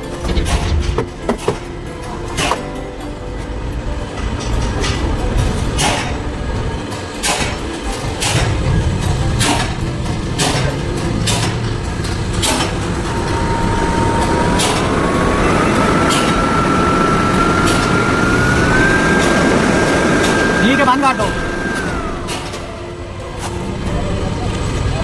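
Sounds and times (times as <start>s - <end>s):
sharp clicks or knocks: 0.0s - 2.8s
fan whine rising in pitch: 0.0s - 25.0s
truck engine rumbling: 0.0s - 25.0s.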